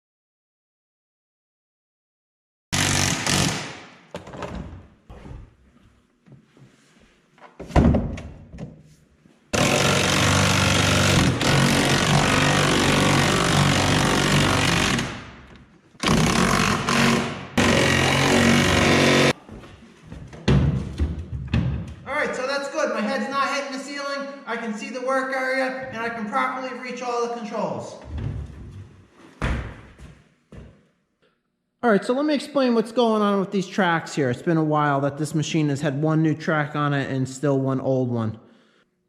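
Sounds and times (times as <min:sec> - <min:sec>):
power tool driving bolts: 0:02.8 - 0:04.6, 0:09.6 - 0:19.4.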